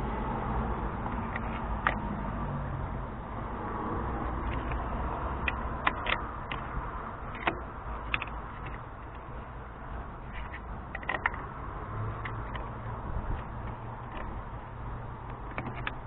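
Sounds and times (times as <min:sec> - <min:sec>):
steady low rumble: 0:00.0 - 0:16.0
tools clicking and knocking: 0:04.3 - 0:09.4, 0:10.1 - 0:14.6, 0:15.2 - 0:16.0.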